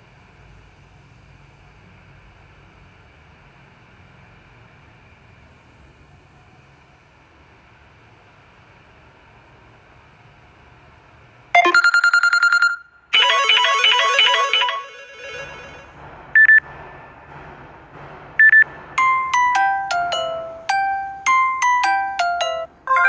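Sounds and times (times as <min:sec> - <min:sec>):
fast repeated ringtone notes: 0:11.6 - 0:15.4, 0:18.4 - 0:23.0
rhythmic chiming ringtone: 0:11.6 - 0:15.4, 0:18.4 - 0:23.0
falling notes ringtone: 0:11.6 - 0:15.7, 0:18.5 - 0:23.0.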